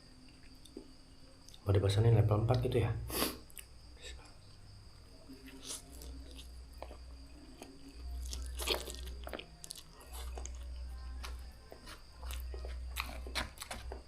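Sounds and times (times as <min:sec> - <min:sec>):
person chewing noodles: 0:05.4 - 0:14.0.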